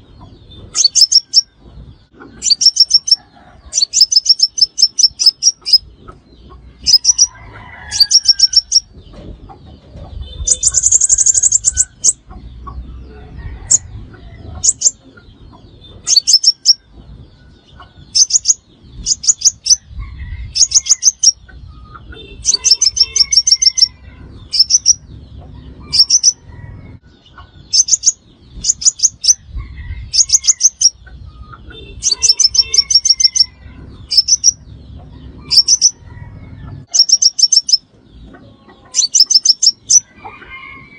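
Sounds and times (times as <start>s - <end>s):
bird buzzy trill: 2.4s - 5.9s, 10.2s - 12.2s, 22.0s - 25.0s, 31.9s - 34.6s.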